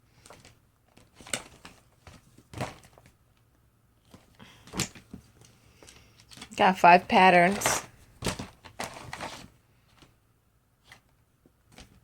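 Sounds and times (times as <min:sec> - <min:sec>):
packaging rustling and tapping: 0:00.2 - 0:03.2, 0:04.0 - 0:10.1.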